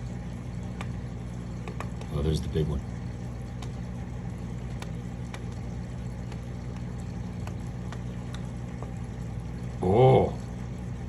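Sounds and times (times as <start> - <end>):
steady low hum: 0.0 - 11.0
fish snapping clicks: 0.7 - 1.0, 1.6 - 2.1, 3.5 - 3.8, 4.7 - 5.6, 6.2 - 8.9.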